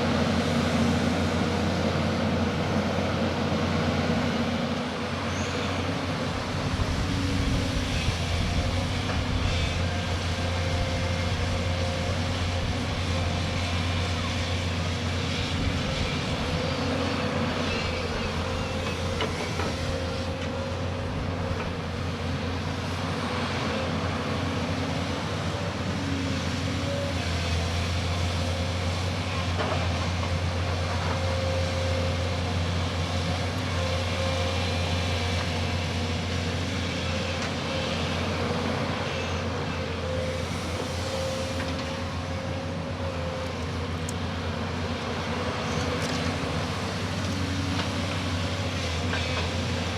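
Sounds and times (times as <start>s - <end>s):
diesel engine running under load: 0.0s - 49.9s.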